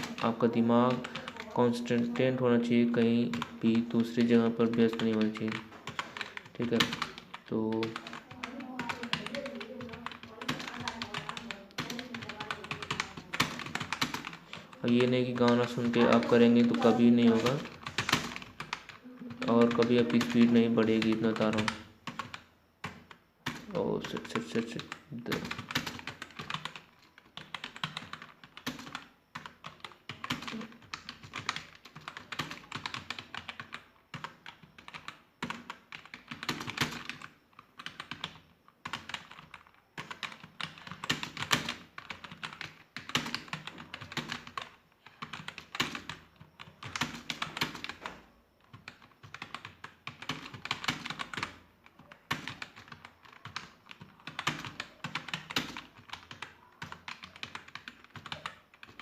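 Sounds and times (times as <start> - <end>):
computer keyboard typing: 0.0 - 59.0.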